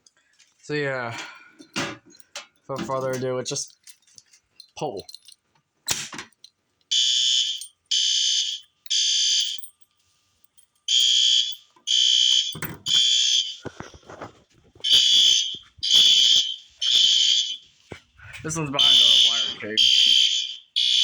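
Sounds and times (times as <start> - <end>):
fire alarm horn blasts: 6.9 - 9.6, 10.9 - 13.6, 14.8 - 17.6, 18.8 - 21.0.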